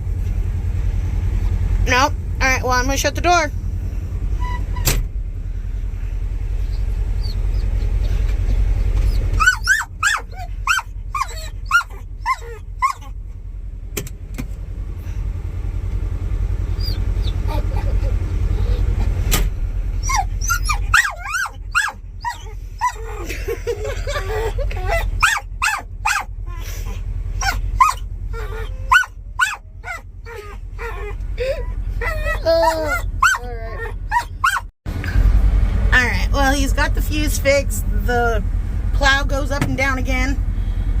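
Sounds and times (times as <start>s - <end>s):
low rumble: 0.0s - 41.0s
dog whining and yipping: 4.4s - 5.0s, 6.6s - 13.2s, 16.7s - 19.3s, 19.9s - 34.7s.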